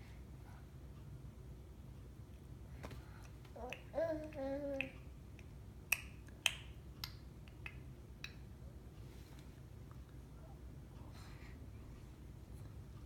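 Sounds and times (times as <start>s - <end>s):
baby babbling: 3.6s - 5.0s
tongue clicks: 4.8s - 8.4s.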